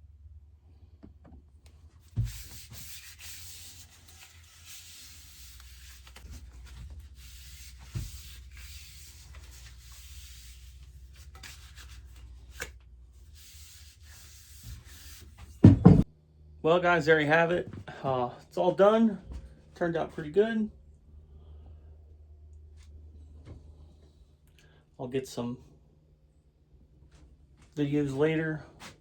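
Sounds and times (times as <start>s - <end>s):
scratchy rubbing on wooden handle: 2.1s - 15.6s
knocking on wood: 15.6s - 16.0s.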